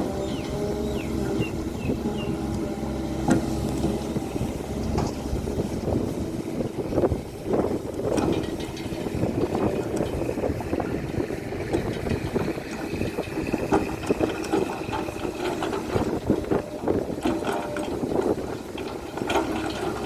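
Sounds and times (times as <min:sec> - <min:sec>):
excavator diesel engine running: 0:00.0 - 0:20.0
knocks and clatters: 0:08.0 - 0:16.5.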